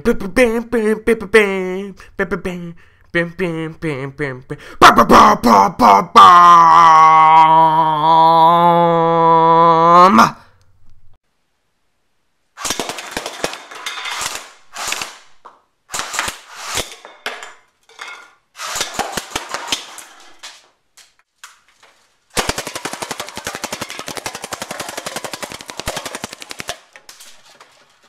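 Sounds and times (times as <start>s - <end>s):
airsoft rifle firing bursts: 18.6s - 19.9s, 22.4s - 26.9s.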